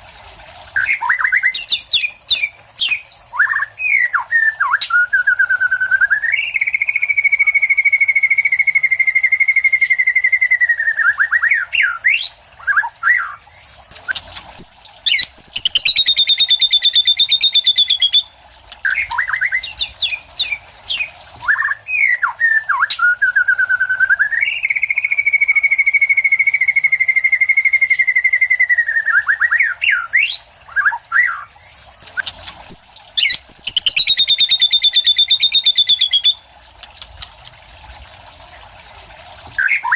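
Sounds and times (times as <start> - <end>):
songbird singing trills: 0.8 - 36.4.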